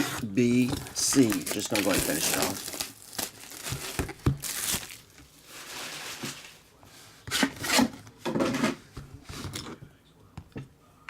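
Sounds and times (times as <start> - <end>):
card packaging tearing: 0.1 - 5.2.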